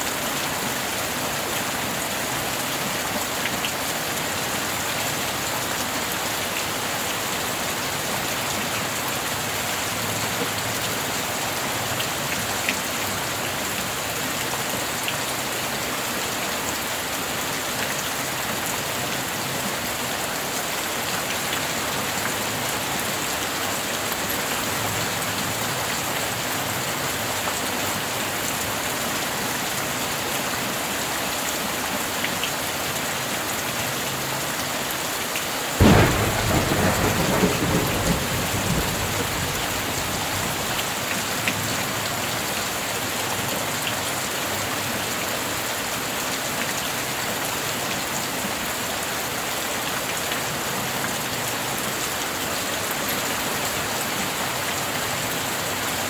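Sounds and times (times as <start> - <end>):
heavy rain: 0.0 - 56.0
thunderclap rumbling: 35.8 - 41.1.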